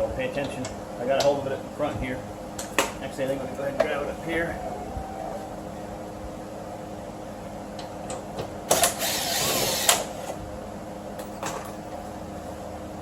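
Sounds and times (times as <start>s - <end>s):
power driver whirring: 8.7s - 10.3s.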